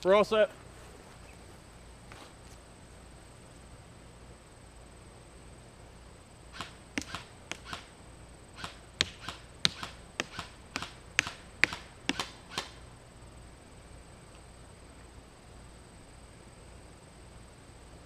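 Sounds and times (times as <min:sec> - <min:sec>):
airsoft rifle shots: 0:06.5 - 0:12.8.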